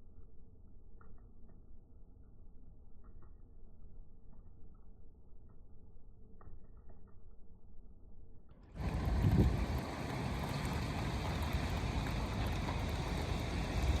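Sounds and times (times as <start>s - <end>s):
snowstorm wind rushing: 8.8s - 14.0s.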